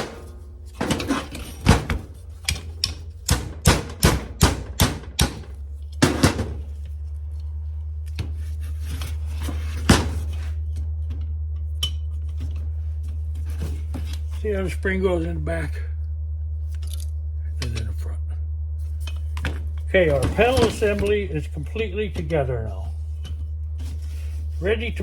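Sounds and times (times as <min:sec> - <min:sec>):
hammer striking metal pin: 0:00.0 - 0:06.6
steady low hum: 0:00.0 - 0:25.0.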